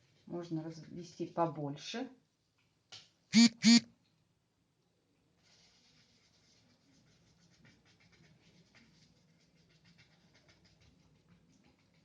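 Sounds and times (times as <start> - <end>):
paintbrush scratching: 5.4 - 12.0.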